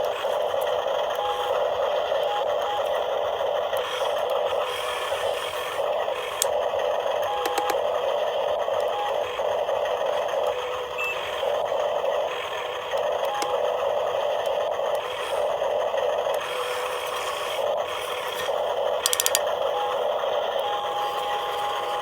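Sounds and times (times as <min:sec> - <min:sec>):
small electric motors whining: 0:00.0 - 0:22.0
sharp clicks: 0:06.2 - 0:06.6, 0:07.2 - 0:07.8, 0:19.0 - 0:19.5.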